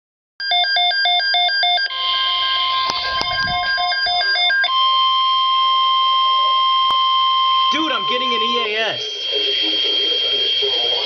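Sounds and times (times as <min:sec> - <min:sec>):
switching electronic alert tones: 0:00.4 - 0:09.3.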